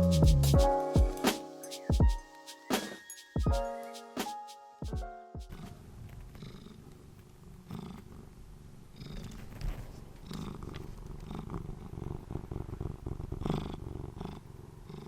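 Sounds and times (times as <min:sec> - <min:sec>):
cat purring: 0:05.5 - 0:15.0.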